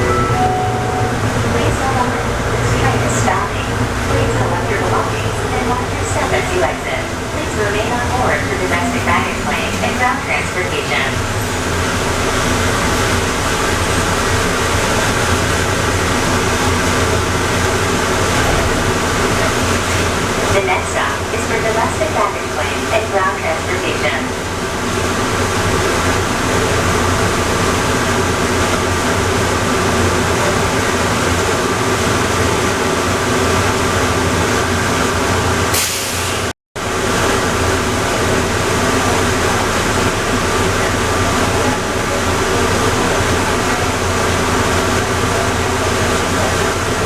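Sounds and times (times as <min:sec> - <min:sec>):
held tones: 0:00.0 - 0:01.5
people mover train running: 0:00.0 - 0:47.0.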